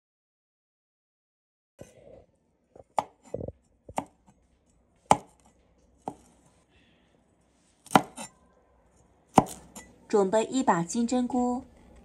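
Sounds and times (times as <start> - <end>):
knife chopping on cutting board: 2.9 - 4.4, 5.0 - 6.4, 7.8 - 8.3, 9.3 - 9.9.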